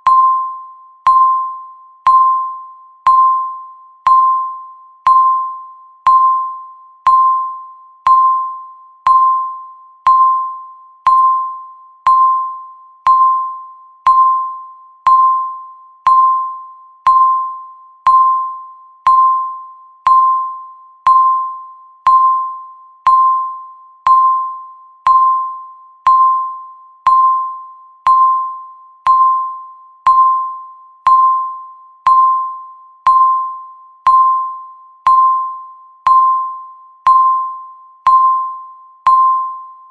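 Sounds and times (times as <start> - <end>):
bell-like timer ping: 0.0 - 39.9.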